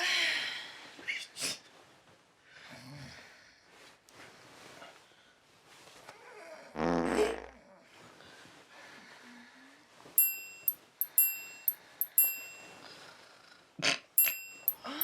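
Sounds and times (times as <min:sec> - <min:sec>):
bright ringing chime dings: 0:10.2 - 0:12.8, 0:14.2 - 0:15.0.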